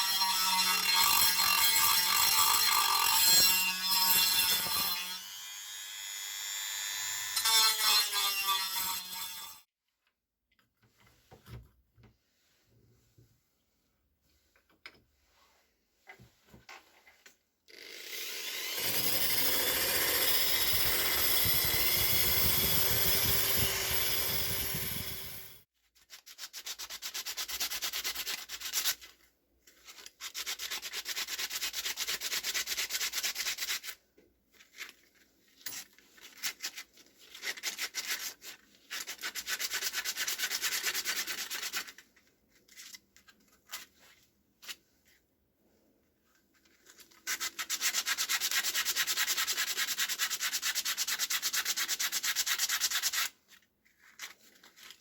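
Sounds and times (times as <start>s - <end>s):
sanding metal parts: 18.6s - 25.5s.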